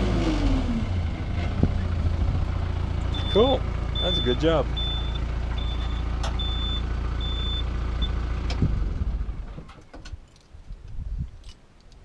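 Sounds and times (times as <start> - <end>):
loader engine running: 0.0 - 9.8
reverse alarm beeping: 3.2 - 8.2.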